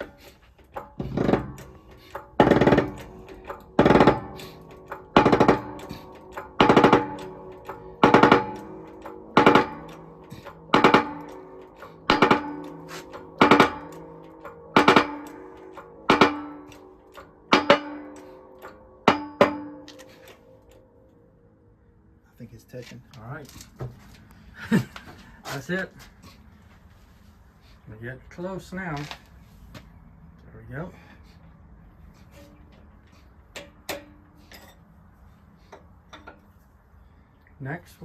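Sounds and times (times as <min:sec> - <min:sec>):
hammer striking metal driver: 0:00.0 - 0:20.8, 0:33.5 - 0:34.8.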